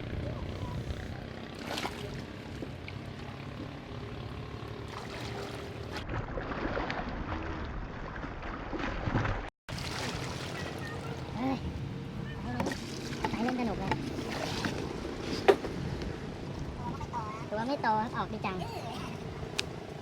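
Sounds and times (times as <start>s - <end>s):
steady low hum: 0.0s - 6.2s.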